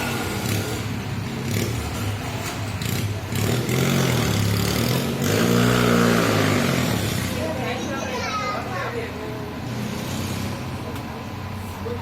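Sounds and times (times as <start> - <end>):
motorcycle engine revving: 0.0 - 7.7, 9.6 - 10.9.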